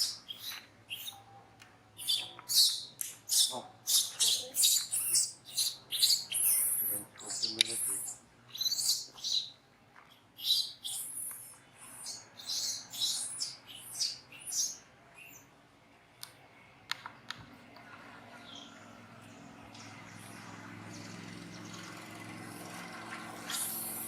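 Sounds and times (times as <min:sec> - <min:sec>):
young monkey squealing: 0:00.0 - 0:01.2, 0:02.0 - 0:09.5, 0:10.4 - 0:15.4, 0:23.4 - 0:24.0.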